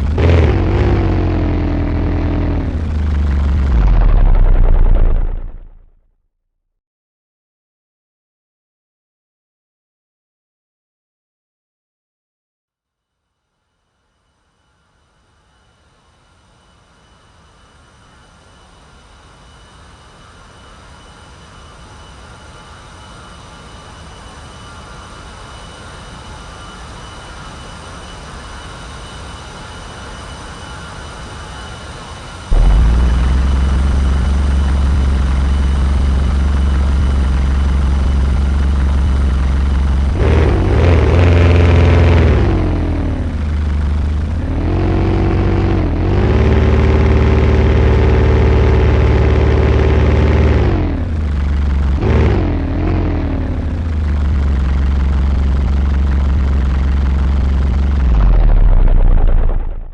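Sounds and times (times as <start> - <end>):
bass-heavy music on car subwoofers: 32.5 - 36.3.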